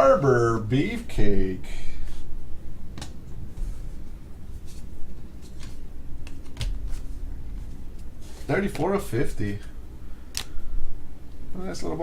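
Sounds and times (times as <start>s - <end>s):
steady low hum: 0.0s - 12.0s
cards clicking and rustling: 5.4s - 7.1s.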